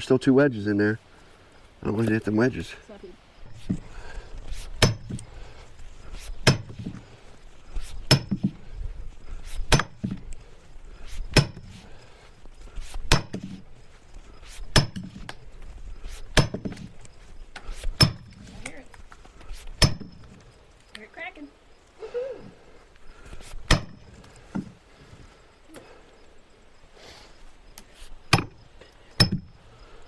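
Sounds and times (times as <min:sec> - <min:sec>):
maul striking steel wedge: 0:04.8 - 0:05.2, 0:06.4 - 0:06.8, 0:08.1 - 0:08.5, 0:09.7 - 0:10.2, 0:11.3 - 0:11.7, 0:13.1 - 0:13.5, 0:14.7 - 0:15.1, 0:16.4 - 0:16.7, 0:18.0 - 0:18.3, 0:23.6 - 0:24.0, 0:28.3 - 0:28.6, 0:29.2 - 0:29.5.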